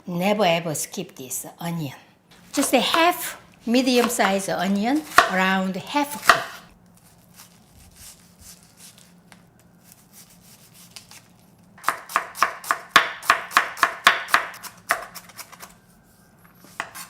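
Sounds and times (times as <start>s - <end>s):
knife chopping on cutting board: 2.6s - 3.3s, 3.9s - 5.5s, 6.1s - 6.7s, 11.8s - 15.7s.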